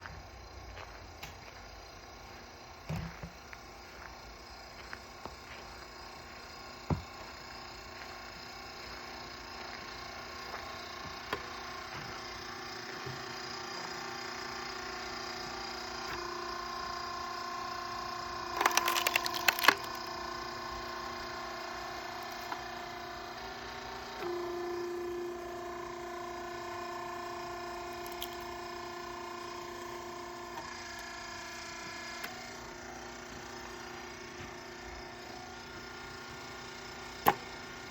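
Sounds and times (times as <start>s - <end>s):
log splitter humming: 0.0s - 37.9s
log cracking and splintering: 18.6s - 20.0s, 28.0s - 28.5s.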